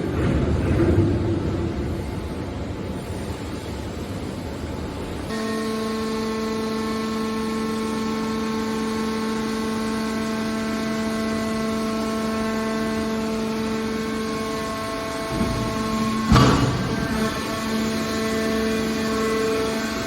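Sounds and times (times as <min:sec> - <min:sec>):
steady hum: 0:00.0 - 0:20.0
baler machine noise: 0:05.2 - 0:20.0.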